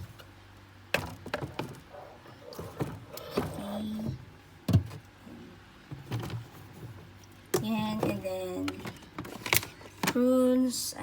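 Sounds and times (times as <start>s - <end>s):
items knocking on fridge shelves: 0.9s - 5.1s, 5.8s - 10.2s.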